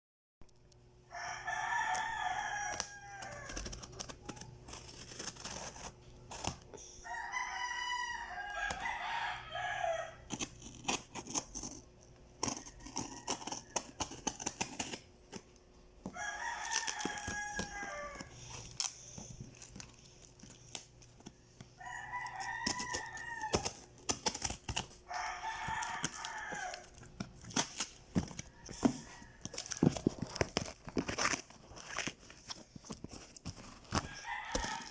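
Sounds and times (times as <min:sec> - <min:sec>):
rooster crowing: 0:01.1 - 0:03.9, 0:07.0 - 0:10.3, 0:12.4 - 0:14.2, 0:16.1 - 0:18.5, 0:21.8 - 0:24.4, 0:25.0 - 0:27.0, 0:28.2 - 0:30.5, 0:33.9 - 0:34.9
packaging crinkling and tearing: 0:02.6 - 0:06.8, 0:16.2 - 0:34.9.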